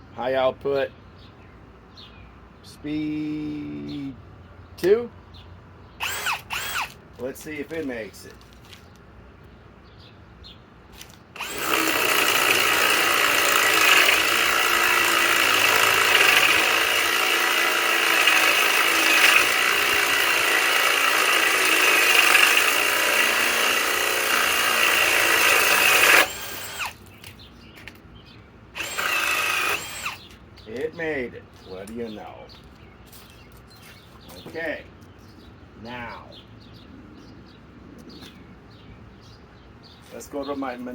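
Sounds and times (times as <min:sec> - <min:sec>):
cordless drill drilling: 0:06.0 - 0:07.0, 0:11.0 - 0:27.0, 0:28.8 - 0:30.3.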